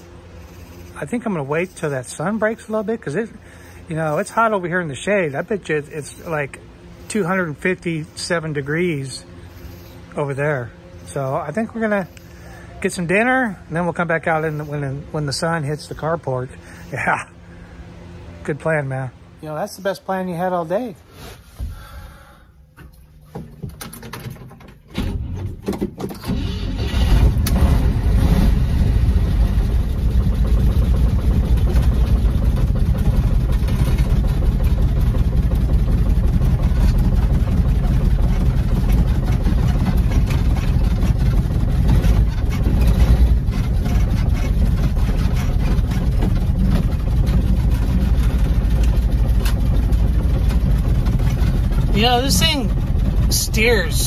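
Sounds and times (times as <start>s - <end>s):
car engine starting and rumbling: 23.2s - 54.0s.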